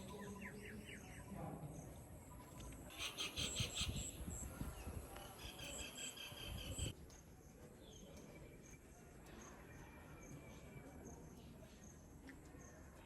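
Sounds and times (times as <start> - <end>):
high wildlife chirps: 2.6 - 4.6.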